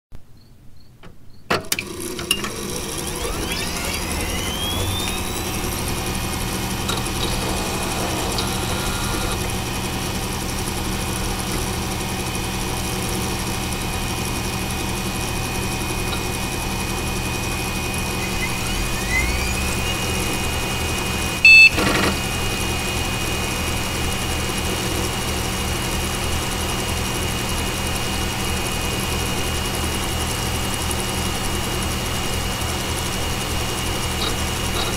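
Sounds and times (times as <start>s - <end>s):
computer fans whirring: 1.6s - 34.9s
rising whine: 2.2s - 11.8s, 15.3s - 24.5s
computer beep: 3.2s - 6.5s, 18.2s - 21.9s
power button clicks: 21.4s - 22.0s.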